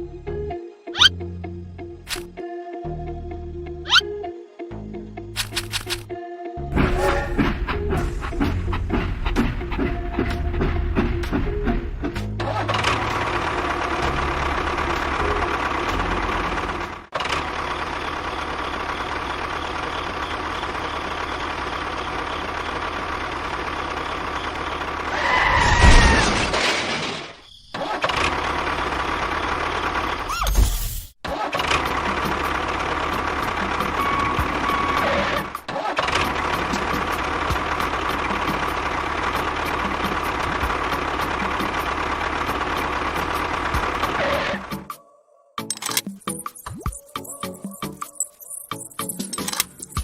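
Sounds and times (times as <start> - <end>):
small vehicle motor running: 7.0 - 25.8, 27.8 - 30.3, 31.4 - 44.7.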